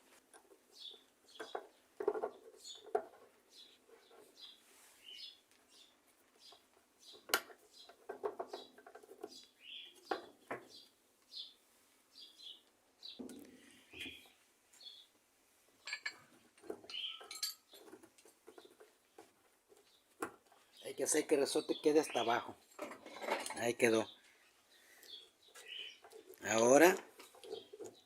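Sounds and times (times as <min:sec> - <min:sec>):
small metal parts clinking: 0:15.8 - 0:18.0.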